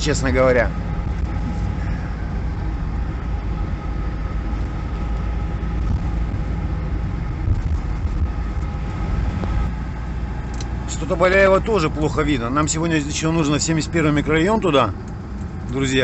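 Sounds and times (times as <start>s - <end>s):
engine and road rumble: 0.0s - 16.0s.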